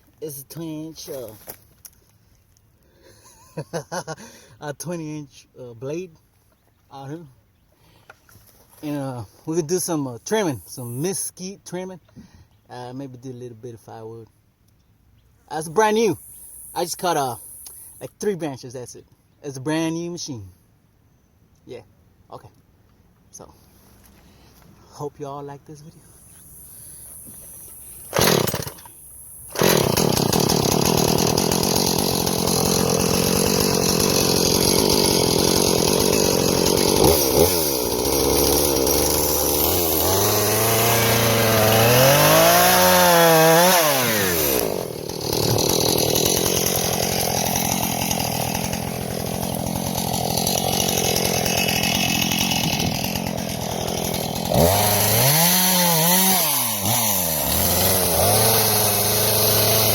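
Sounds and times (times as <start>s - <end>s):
chainsaw cutting wood: 15.9s - 18.1s, 26.4s - 59.9s.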